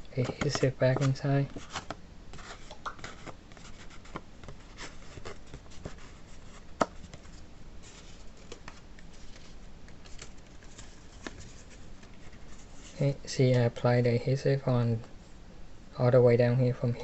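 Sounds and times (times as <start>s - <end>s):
card stock rustling and tapping: 0.2s - 12.4s.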